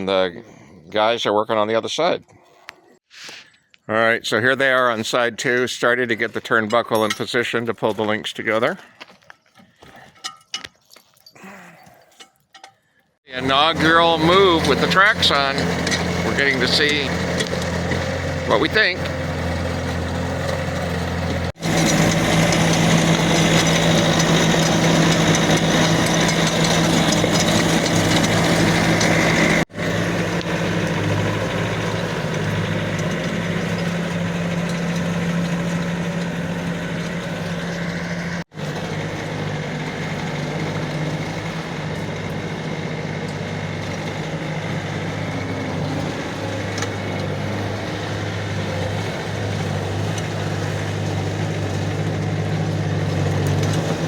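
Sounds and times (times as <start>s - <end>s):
skid steer diesel engine running: 13.3s - 54.0s.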